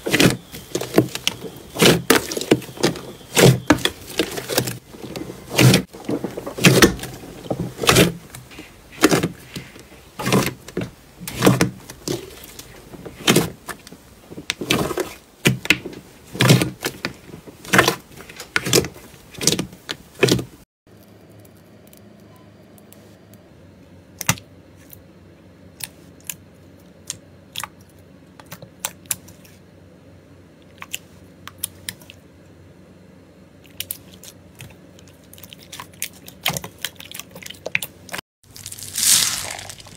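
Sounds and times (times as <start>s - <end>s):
slime crackling and popping: 38.5s - 39.9s.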